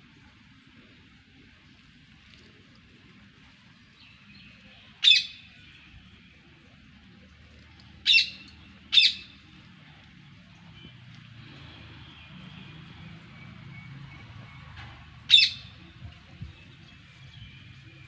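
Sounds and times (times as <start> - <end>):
bird squawking: 8.0 - 9.4, 15.3 - 15.7.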